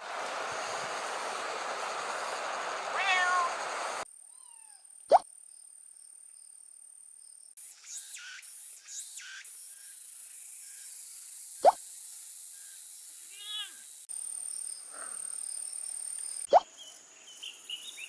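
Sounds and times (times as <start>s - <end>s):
steady hiss: 0.0s - 4.0s.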